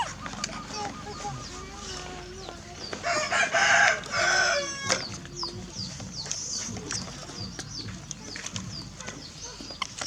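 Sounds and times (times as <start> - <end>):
loud harsh animal calls: 0.0 - 2.2.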